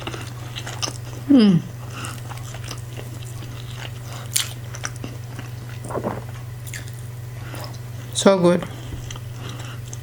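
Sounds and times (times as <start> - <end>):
steady low hum: 0.0 - 10.0
chewing and mouth smacks: 2.0 - 7.8.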